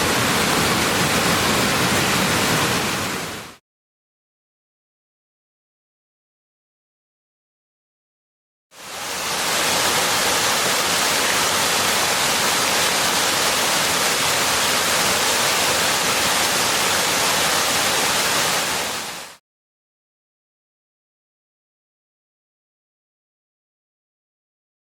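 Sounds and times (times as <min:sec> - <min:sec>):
waterfall roaring: 0:00.0 - 0:03.6, 0:08.8 - 0:19.4.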